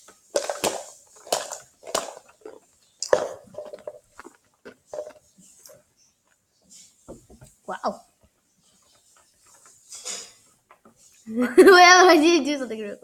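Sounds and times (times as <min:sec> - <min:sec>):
plastic packaging crackling: 0:00.0 - 0:05.2.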